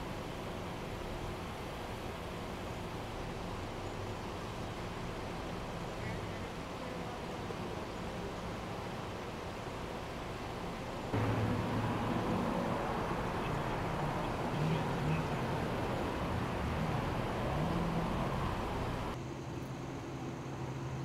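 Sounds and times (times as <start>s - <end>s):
street noise: 0.0s - 21.0s
vehicle engine running: 11.1s - 19.2s.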